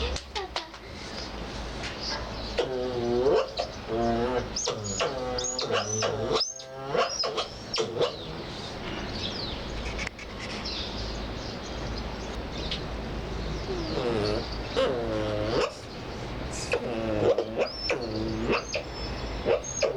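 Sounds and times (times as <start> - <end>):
low background rumble: 0.0 - 19.9
otters squeaking and whining: 2.6 - 8.6.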